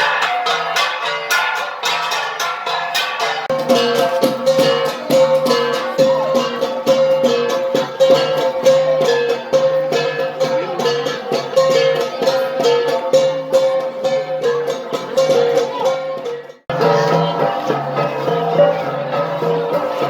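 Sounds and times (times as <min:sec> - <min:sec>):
bronze gong ensemble: 0:00.0 - 0:20.0.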